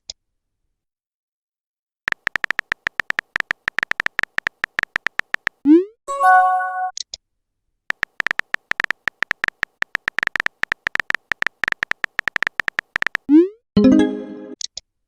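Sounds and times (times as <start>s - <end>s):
keyboard typing clicks: 2.1s - 5.6s, 7.9s - 13.4s
notification chime: 6.1s - 6.9s, 13.8s - 14.6s.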